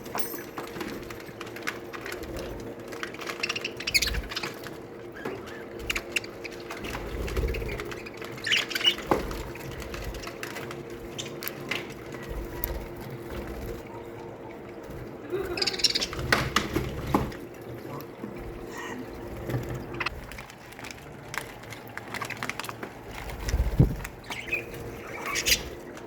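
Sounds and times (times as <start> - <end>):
budgerigars chirping: 3.3 - 9.4, 15.6 - 16.4, 24.2 - 25.8
loud warbling calls: 15.2 - 16.3, 24.2 - 25.9
clicks and scratches: 19.4 - 26.0.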